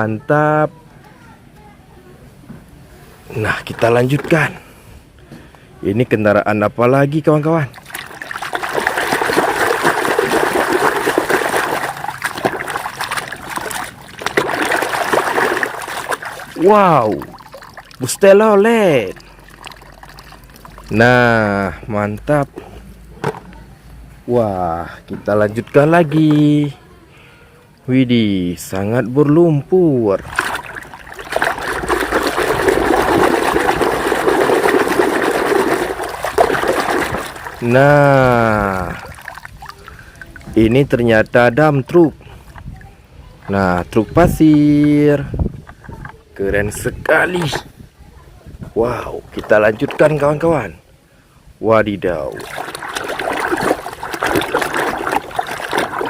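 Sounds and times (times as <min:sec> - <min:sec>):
water trickling and splashing: 0:07.2 - 0:23.1, 0:24.3 - 0:26.8, 0:30.1 - 0:50.9, 0:52.0 - 0:56.0.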